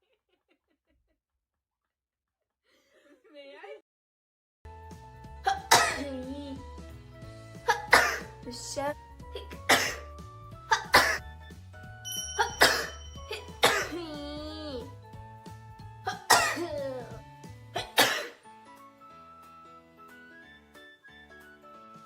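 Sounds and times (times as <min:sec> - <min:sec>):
background music: 0:04.7 - 0:22.0
women sneezing: 0:05.4 - 0:06.1, 0:07.7 - 0:08.3, 0:09.4 - 0:10.1, 0:10.7 - 0:11.2, 0:12.4 - 0:14.2, 0:16.1 - 0:17.0, 0:17.8 - 0:18.4.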